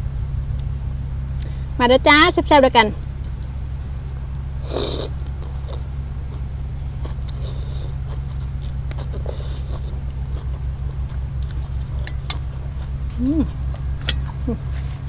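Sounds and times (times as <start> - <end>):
steady low hum: 0.0 - 15.0
chewing: 4.3 - 15.0
person slurping soup: 4.6 - 10.6.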